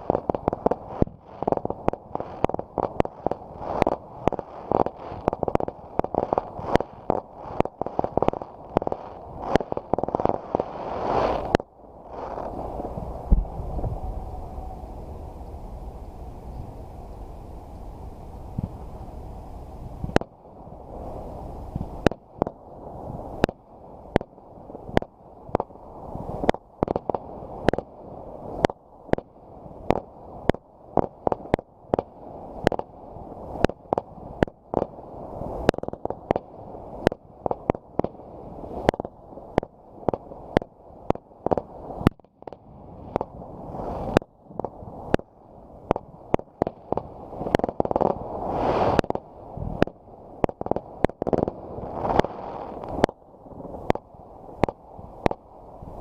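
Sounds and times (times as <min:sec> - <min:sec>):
low rumble: 0:11.7 - 0:20.2
fireworks bangs: 0:45.9 - 0:53.1.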